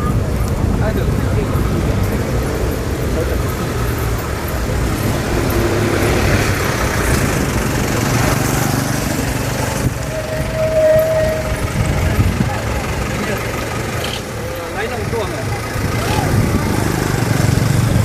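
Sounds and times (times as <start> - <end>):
crowd chatter: 0.0 - 18.0
traffic rumble: 0.0 - 18.0
held tone: 9.2 - 14.8.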